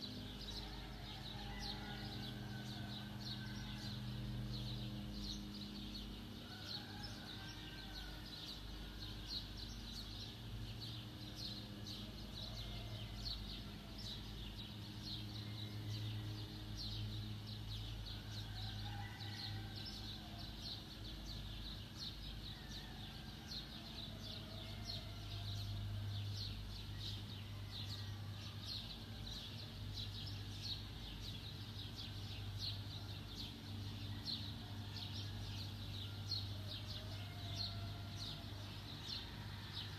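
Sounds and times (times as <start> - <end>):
steady low hum: 0.0 - 39.9.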